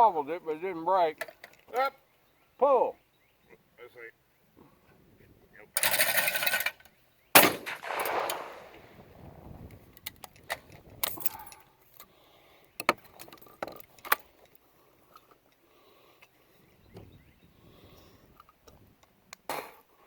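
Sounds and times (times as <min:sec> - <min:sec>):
shotgun report echoing: 0:07.4 - 0:09.1.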